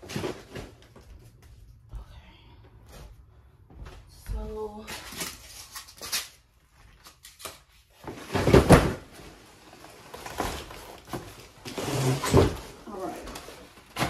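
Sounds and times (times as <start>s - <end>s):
cardboard packaging rustling: 4.9s - 14.0s.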